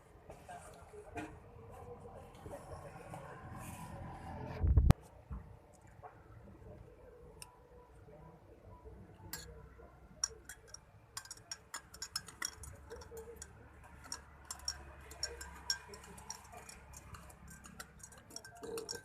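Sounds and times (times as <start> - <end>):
metal spoon clinking in glass: 9.3 - 9.5, 10.2 - 19.0.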